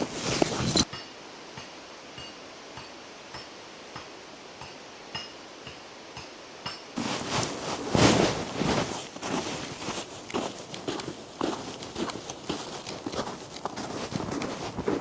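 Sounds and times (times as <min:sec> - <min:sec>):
footsteps crunching in snow: 0:00.0 - 0:00.9, 0:07.0 - 0:15.0.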